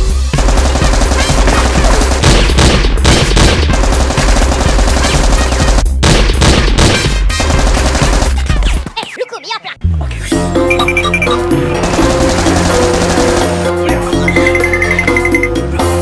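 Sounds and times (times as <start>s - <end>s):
rapid gunfire sound effects: 0.1s - 9.0s, 11.6s - 15.5s
action music with heavy bass beat: 9.9s - 16.0s.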